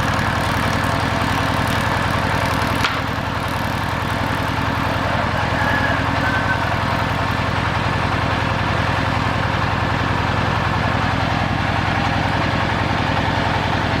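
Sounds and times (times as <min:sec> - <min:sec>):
engine idling: 0:00.0 - 0:14.0
faint squeak: 0:05.4 - 0:06.9.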